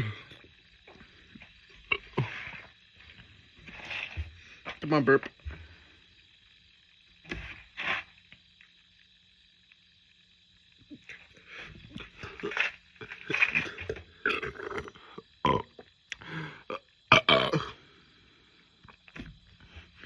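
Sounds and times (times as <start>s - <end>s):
man belching: 0.0s - 0.5s, 1.8s - 2.6s, 12.0s - 17.8s.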